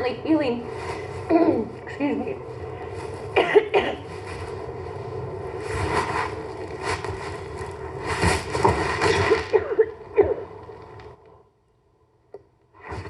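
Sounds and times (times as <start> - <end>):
woman coughing: 3.4 - 4.0, 9.4 - 10.5.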